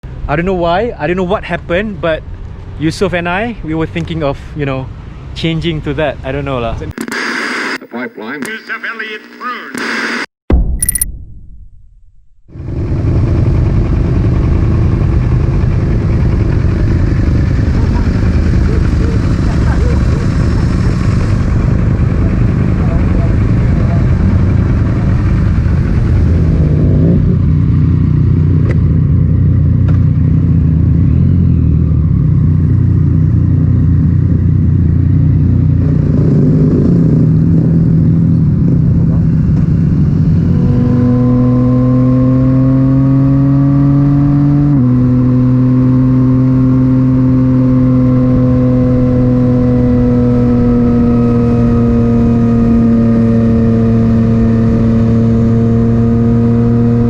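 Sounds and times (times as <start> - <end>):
motorcycle engine while riding: 12.6 - 57.0.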